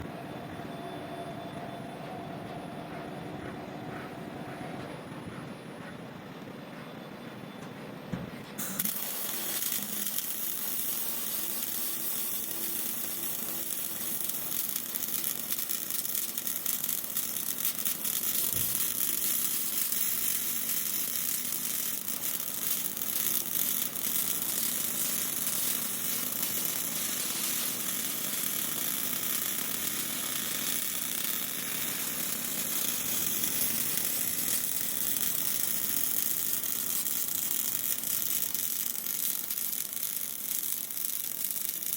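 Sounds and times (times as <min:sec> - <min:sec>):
welding arc sizzling hiss: 0:08.6 - 0:41.9.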